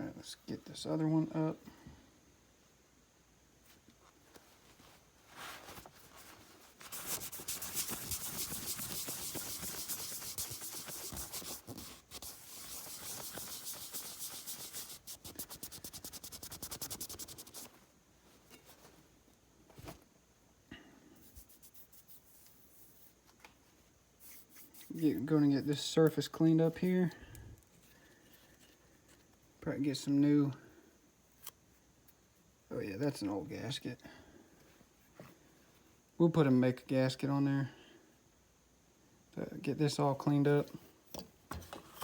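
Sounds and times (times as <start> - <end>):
hand scrubbing metal: 6.8 - 17.7.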